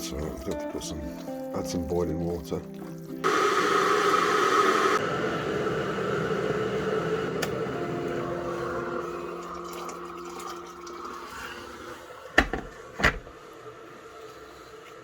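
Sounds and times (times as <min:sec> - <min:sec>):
water pouring into bowl: 0:09.0 - 0:12.1.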